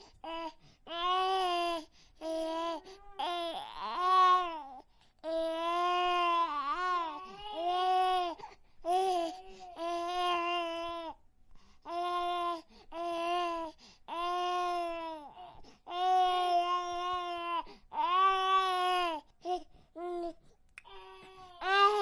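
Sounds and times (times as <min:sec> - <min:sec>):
baby crying: 0:00.2 - 0:11.2, 0:20.9 - 0:22.0.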